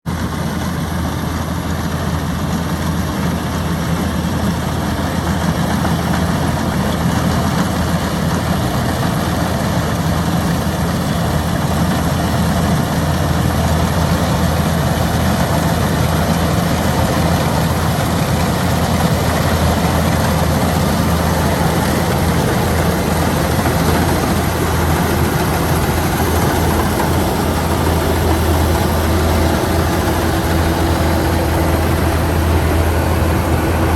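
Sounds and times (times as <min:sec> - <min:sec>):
combine harvester engine drone: 0:00.1 - 0:33.9
broad even rushing noise: 0:11.8 - 0:33.9.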